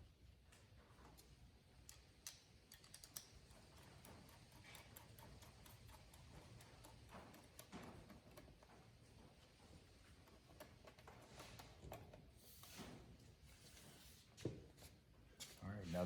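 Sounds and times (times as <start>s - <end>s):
hand tools clicking and tapping: 1.2s - 8.7s.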